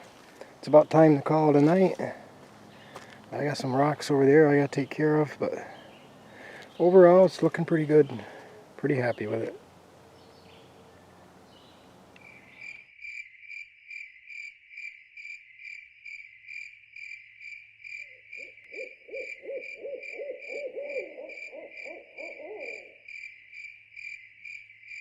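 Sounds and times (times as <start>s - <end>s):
insect chirping: 10.2s - 25.0s
owl trilling: 18.4s - 23.0s.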